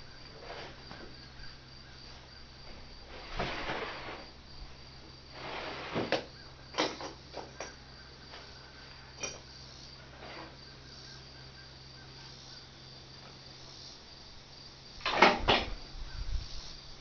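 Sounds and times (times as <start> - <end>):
crickets chirping: 0.0 - 17.0
scraping: 3.0 - 4.4, 5.3 - 7.6.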